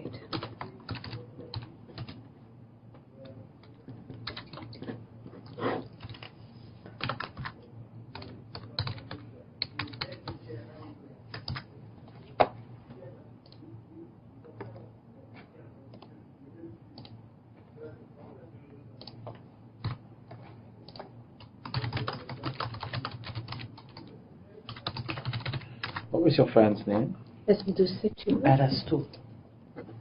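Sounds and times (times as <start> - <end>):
computer keyboard typing: 0.2 - 2.2, 3.2 - 6.4, 7.0 - 10.4, 11.3 - 12.3, 19.8 - 24.1, 24.7 - 26.1.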